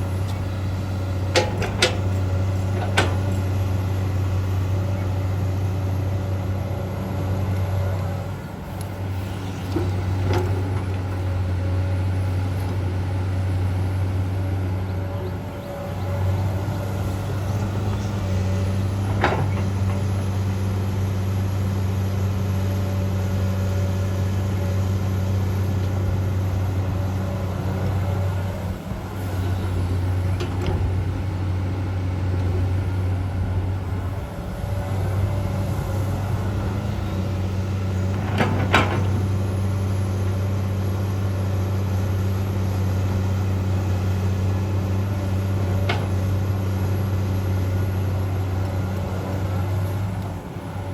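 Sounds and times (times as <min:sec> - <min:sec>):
excavator diesel engine running: 0:00.0 - 0:50.9.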